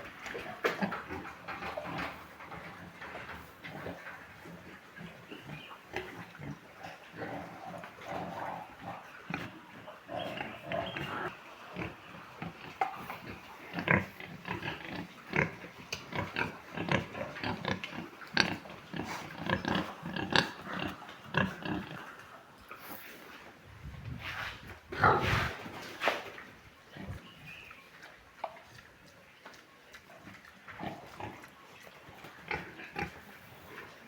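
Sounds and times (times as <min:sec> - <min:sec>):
pigs grunting: 0:00.0 - 0:23.0, 0:24.9 - 0:25.9, 0:30.1 - 0:34.0.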